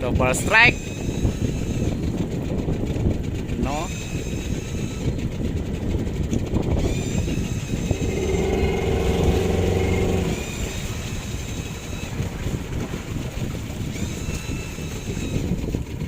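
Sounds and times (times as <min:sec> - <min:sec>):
engine low rumble: 0:05.4 - 0:13.7.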